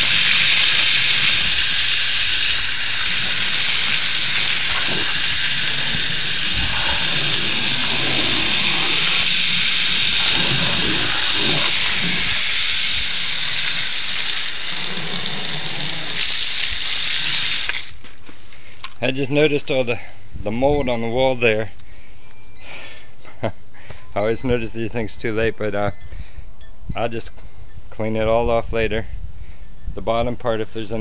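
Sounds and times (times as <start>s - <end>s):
water spraying from garden hose: 0.0s - 18.0s.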